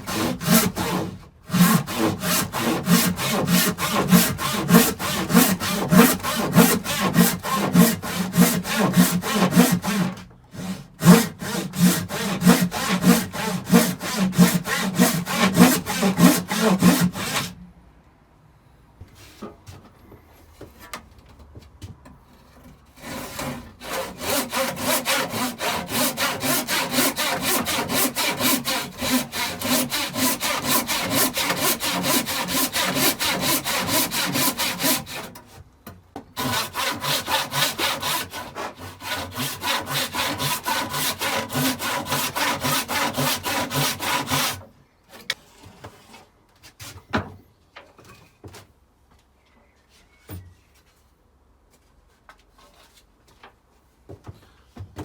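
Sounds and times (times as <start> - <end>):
handsaw cutting timber: 0.0 - 17.5, 23.0 - 35.4, 36.4 - 44.6.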